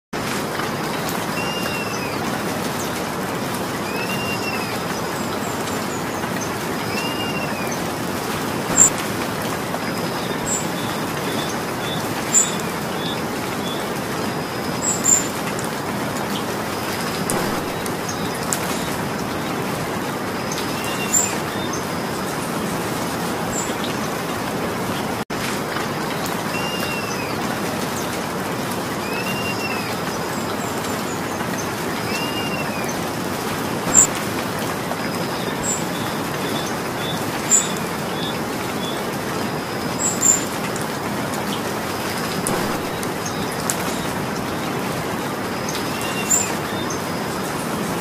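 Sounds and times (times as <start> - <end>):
steady rain: 0.1 - 48.0
bird call rising and falling: 8.7 - 9.0, 33.9 - 34.1.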